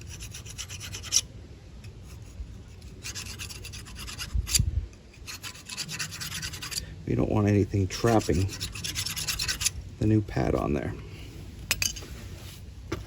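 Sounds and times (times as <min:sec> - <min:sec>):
hand file rasping on metal: 0:00.0 - 0:01.3, 0:01.9 - 0:04.6, 0:05.2 - 0:06.8, 0:07.8 - 0:09.8.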